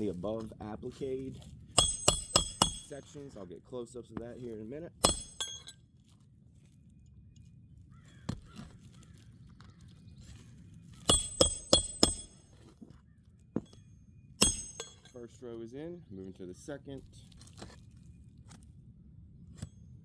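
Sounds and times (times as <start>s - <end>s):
hammer striking nails: 1.8s - 3.1s, 5.0s - 5.7s, 11.1s - 12.4s, 14.4s - 15.1s.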